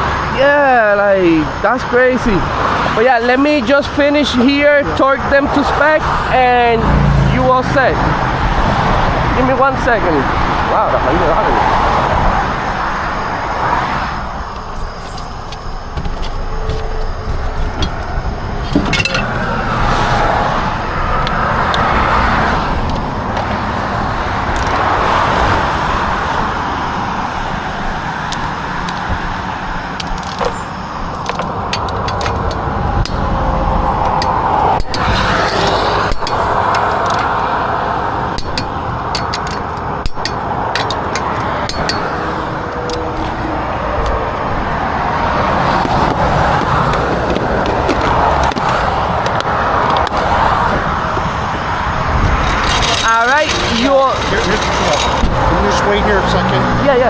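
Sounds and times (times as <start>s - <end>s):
road traffic rushing: 0.0s - 57.0s
metallic clinks of hand tools: 38.4s - 42.2s.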